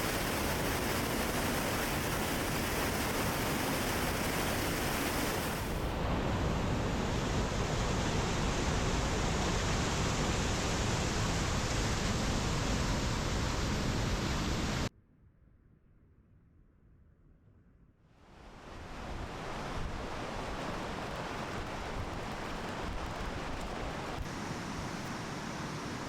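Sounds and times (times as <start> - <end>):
water rushing: 0.0 - 5.9, 18.6 - 26.0.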